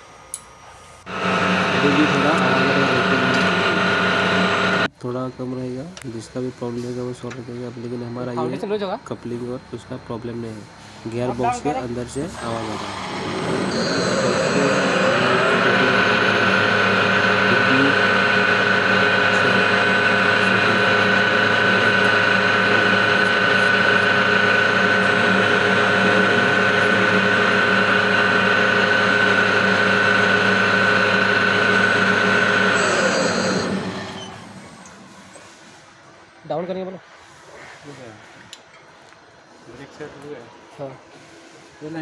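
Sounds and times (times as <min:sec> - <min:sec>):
hoist motor whining and rattling: 0:01.1 - 0:04.9, 0:11.5 - 0:35.9.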